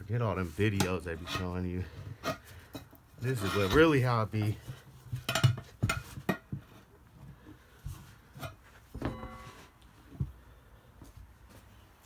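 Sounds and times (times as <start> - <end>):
rubbing and scraping: 0.3 - 5.3.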